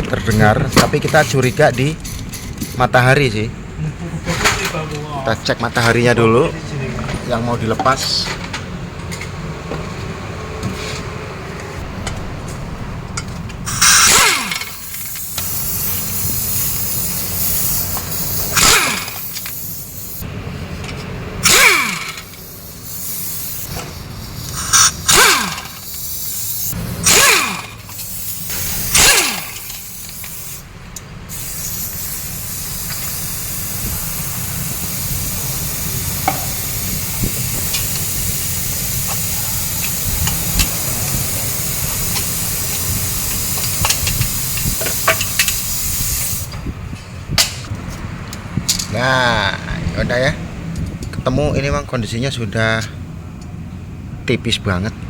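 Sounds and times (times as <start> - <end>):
air impact wrench bursts: 0.2 - 2.9, 13.6 - 20.3, 21.4 - 46.7
steady air hiss: 13.7 - 20.3, 22.2 - 26.8, 27.8 - 30.7, 31.3 - 46.6.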